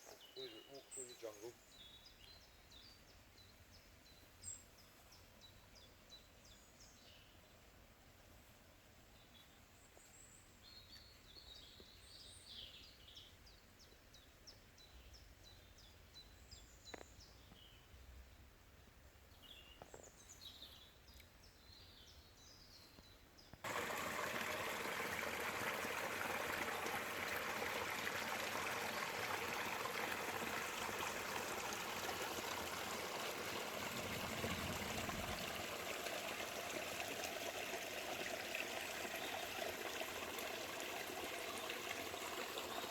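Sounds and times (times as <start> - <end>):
rushing stream: 23.6 - 42.9.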